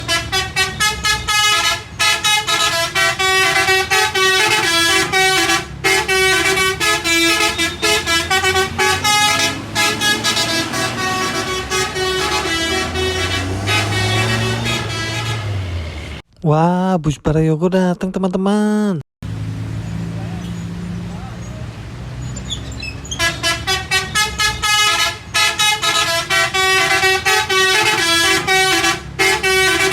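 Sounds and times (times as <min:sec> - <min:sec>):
bus horn playing a tune: 0:00.0 - 0:16.2, 0:23.0 - 0:29.9
bus engine rumbling: 0:00.0 - 0:16.3, 0:19.2 - 0:29.9.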